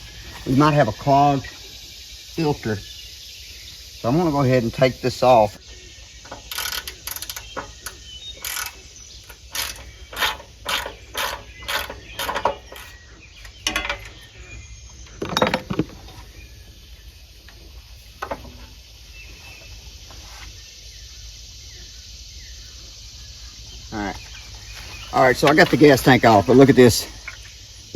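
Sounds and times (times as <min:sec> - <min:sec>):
ratchet wrench clicking: 0:06.4 - 0:12.9.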